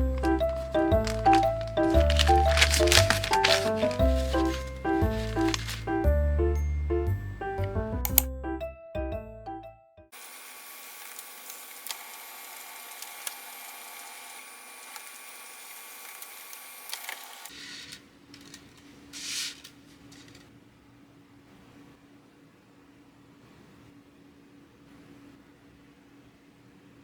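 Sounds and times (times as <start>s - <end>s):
light melodic background music: 0.0s - 10.0s
brief rustle: 0.1s - 5.9s, 17.0s - 20.5s.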